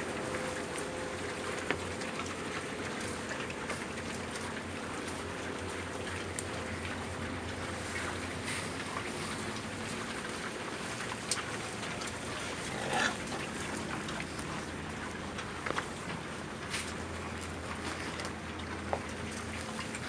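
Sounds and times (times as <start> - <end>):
pigs grunting: 11.8 - 14.8
loud pig call: 12.2 - 13.8.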